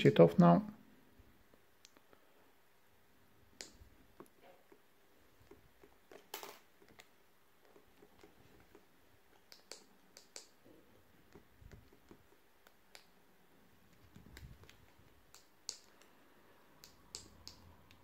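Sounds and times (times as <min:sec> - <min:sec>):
small plastic clicks and taps: 0:05.4 - 0:13.2, 0:13.9 - 0:16.2, 0:16.8 - 0:18.0.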